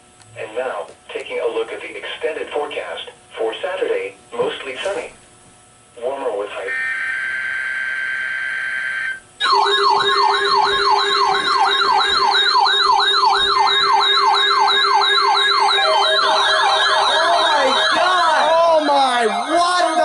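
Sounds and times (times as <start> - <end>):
shrill data buzz: 6.5 - 20.0
fast wailing siren alarm: 6.7 - 20.0
slow wailing alarm: 6.7 - 20.0.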